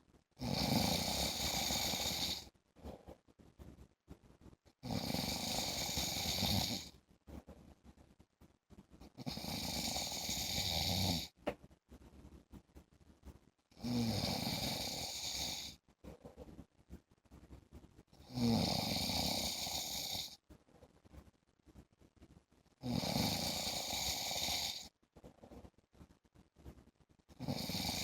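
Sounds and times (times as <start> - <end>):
man snoring: 0.4 - 2.4, 4.8 - 6.9, 9.2 - 11.3, 13.8 - 15.7, 18.3 - 20.4, 22.8 - 24.8, 27.4 - 28.0.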